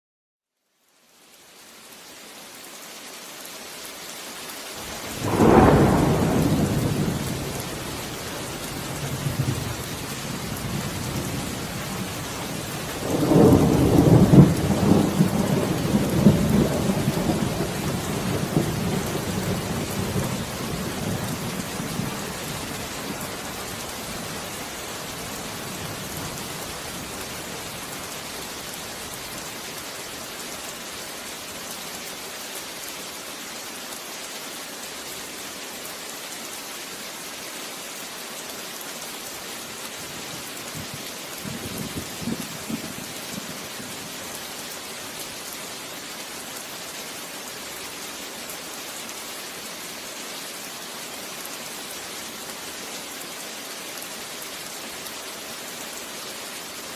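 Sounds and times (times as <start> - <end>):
heavy rain: 0.7 - 56.9
thunder: 5.0 - 8.3.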